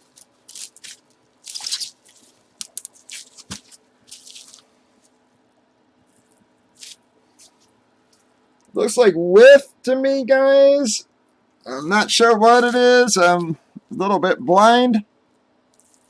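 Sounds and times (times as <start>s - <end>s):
packaging rustling and crinkling: 0.0s - 5.2s, 15.7s - 16.0s.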